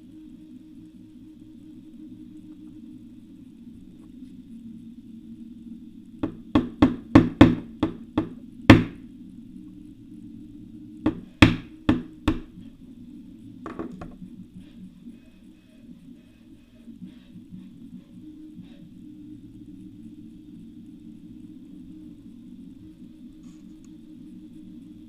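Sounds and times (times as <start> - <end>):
hammer striking a punch: 6.2 - 9.0, 11.1 - 12.5.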